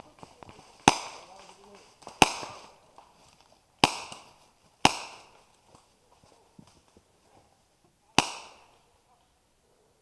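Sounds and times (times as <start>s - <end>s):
airsoft gun shots: 3.8s - 5.3s, 8.2s - 8.8s.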